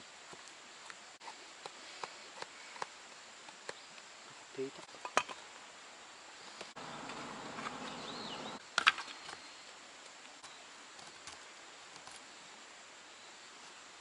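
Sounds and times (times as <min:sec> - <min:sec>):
buzzing hum: 0:06.8 - 0:08.6.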